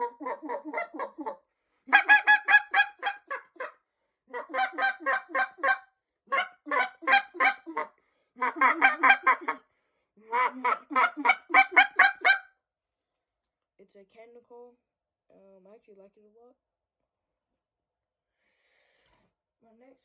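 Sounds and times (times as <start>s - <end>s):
goose call honks and clucks: 0.0s - 9.6s, 10.3s - 12.5s.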